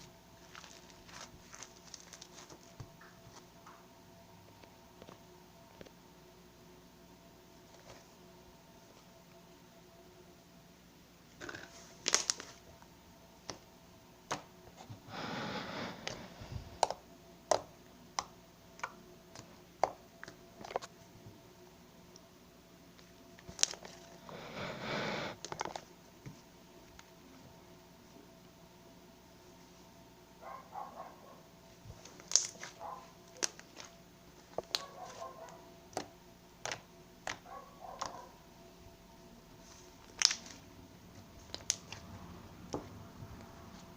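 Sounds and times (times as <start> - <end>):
slime squelching rustle: 0.0 - 3.5, 31.7 - 38.3.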